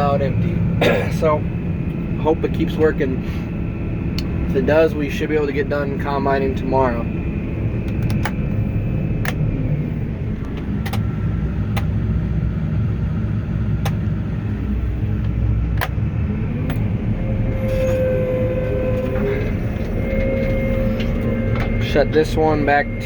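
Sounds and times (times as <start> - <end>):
diesel engine low rumble: 0.0 - 23.0.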